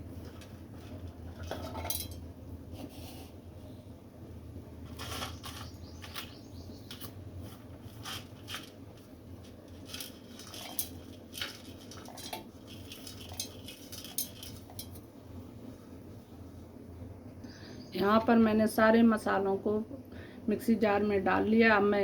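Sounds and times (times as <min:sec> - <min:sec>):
kitchen utensils and dishes clinking: 0:01.4 - 0:02.2, 0:09.9 - 0:15.0.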